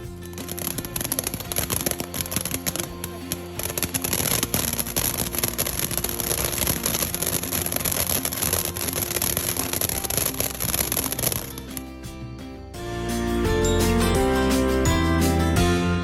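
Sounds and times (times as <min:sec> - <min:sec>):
firework fountain hissing and crackling: 0:00.4 - 0:11.8.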